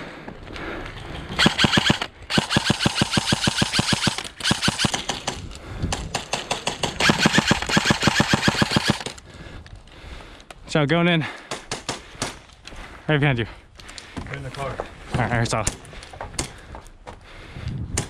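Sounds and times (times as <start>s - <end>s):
airsoft gun firing bursts: 1.4s - 5.4s, 6.0s - 9.2s.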